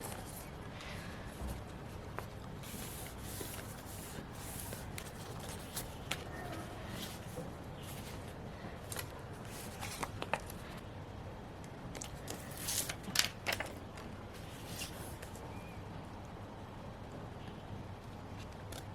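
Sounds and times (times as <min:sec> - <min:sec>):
paper rustling: 0:00.0 - 0:10.8, 0:11.9 - 0:15.4
steady low hiss: 0:00.0 - 0:18.9.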